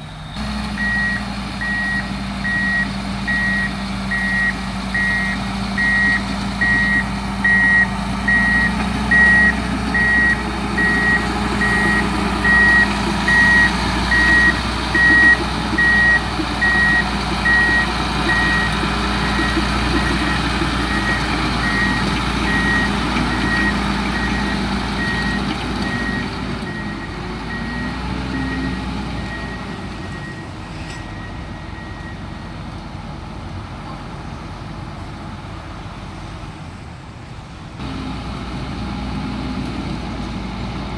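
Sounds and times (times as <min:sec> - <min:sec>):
vehicle engine running: 0:00.0 - 0:30.2
reversing alarm beeping: 0:00.0 - 0:32.6.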